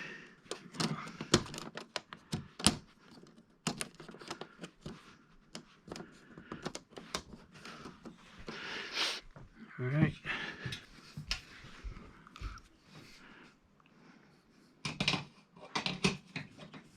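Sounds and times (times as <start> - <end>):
clicks and taps of small parts: 0.5 - 8.2.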